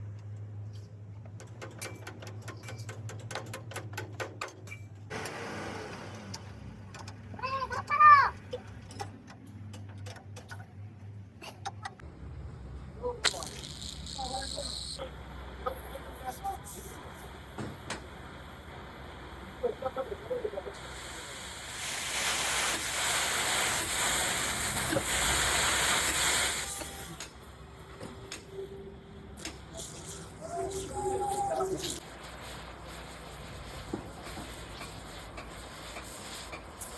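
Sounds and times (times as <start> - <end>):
hiss: 15.4 - 27.6, 29.4 - 36.9.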